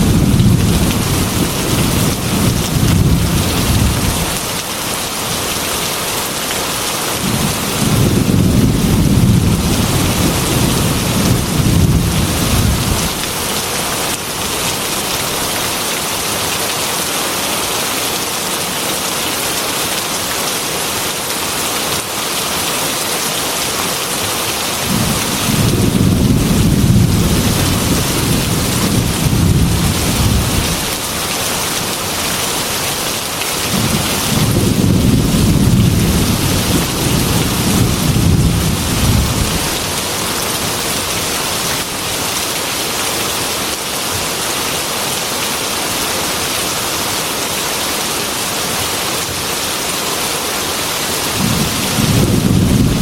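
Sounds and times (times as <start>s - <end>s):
thunder rumbling: 0.0s - 4.4s, 7.2s - 13.2s, 24.8s - 31.0s, 33.7s - 40.0s, 51.4s - 53.0s
heavy rain on a window: 0.0s - 53.0s.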